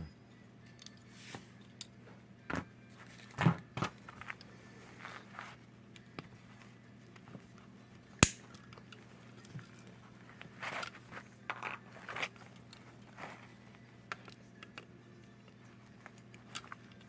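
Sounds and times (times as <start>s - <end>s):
faint steady hum: 0.0s - 17.0s
sharp click: 8.2s - 8.4s.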